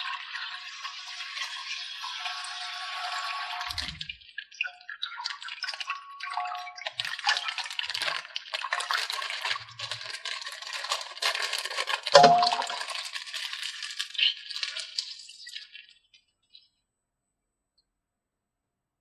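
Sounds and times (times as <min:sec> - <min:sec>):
plastic toys clicking and rattling: 0:06.6 - 0:15.8
plastic packaging crinkling: 0:06.8 - 0:15.9.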